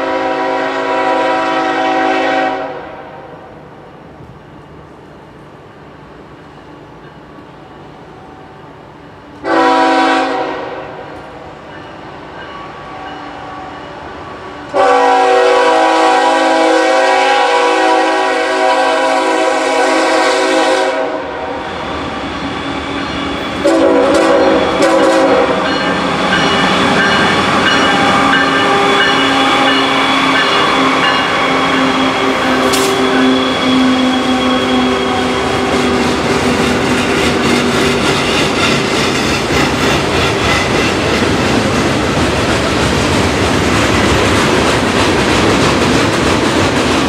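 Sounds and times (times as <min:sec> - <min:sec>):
train horn blasts: 0:00.0 - 0:03.4, 0:09.4 - 0:11.2, 0:12.6 - 0:14.0, 0:14.7 - 0:21.6, 0:23.2 - 0:36.7
passing train rumble and clatter: 0:00.0 - 0:47.0.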